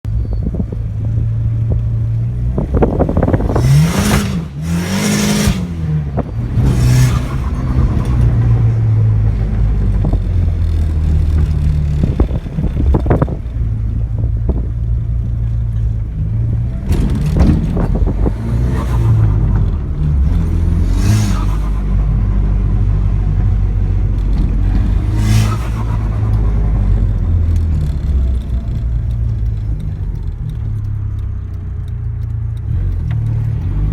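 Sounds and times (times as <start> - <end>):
car engine revving hard: 2.6 - 9.3, 16.8 - 27.1.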